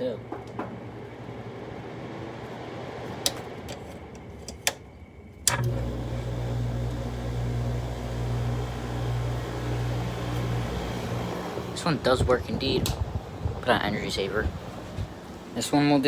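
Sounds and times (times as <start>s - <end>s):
air conditioner fan running: 0.0s - 16.0s
compressor low hum: 0.0s - 16.0s
control clicks: 5.5s - 5.8s.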